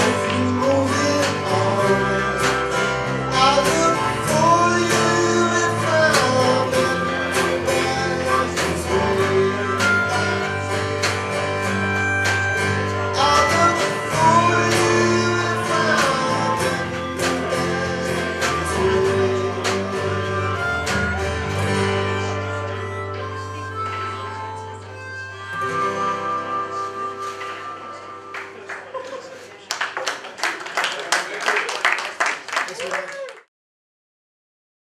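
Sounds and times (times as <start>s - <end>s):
person singing: 0.0s - 11.1s, 12.8s - 23.9s
acoustic guitars strummed and picked: 0.0s - 29.6s.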